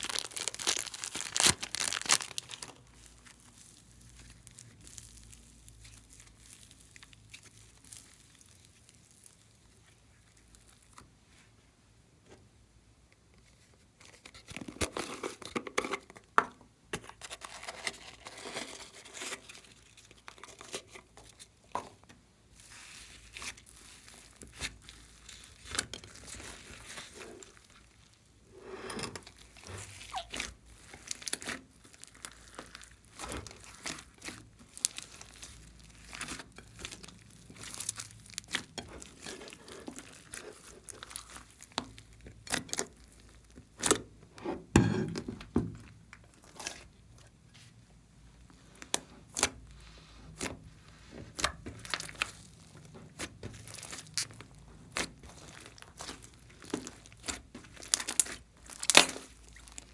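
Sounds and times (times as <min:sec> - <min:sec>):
slime crackling and popping: 0:00.0 - 0:11.0, 0:22.6 - 0:28.3, 0:29.0 - 0:44.1, 0:51.3 - 0:59.9
slime squelch: 0:00.0 - 0:11.5, 0:17.6 - 0:44.7, 0:45.8 - 0:59.9.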